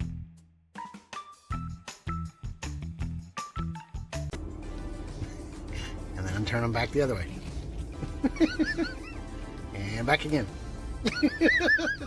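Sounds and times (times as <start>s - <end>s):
music with a steady beat: 0.0s - 6.1s.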